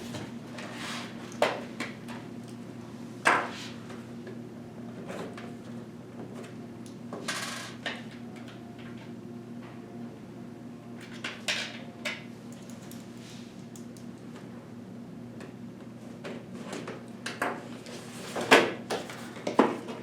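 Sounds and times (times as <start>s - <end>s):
steady low hum: 7.8s - 18.1s.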